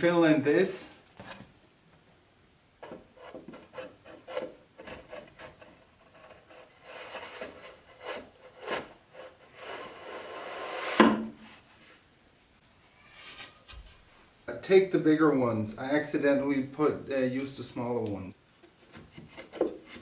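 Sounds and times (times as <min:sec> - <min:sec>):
wood scraping on wood: 0:02.8 - 0:12.0, 0:18.6 - 0:20.0.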